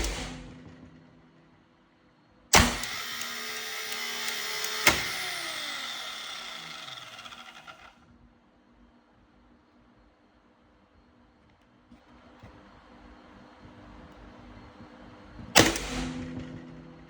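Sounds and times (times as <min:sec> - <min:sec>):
sharp click: 0:02.6 - 0:07.9
circuit breaker clacking: 0:02.6 - 0:08.0
spring-charging motor whirring: 0:02.6 - 0:08.0.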